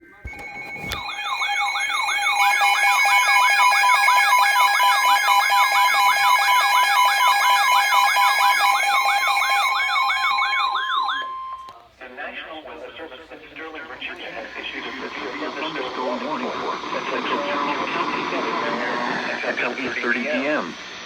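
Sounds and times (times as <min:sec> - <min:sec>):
electronic siren yelping: 0:00.3 - 0:11.7.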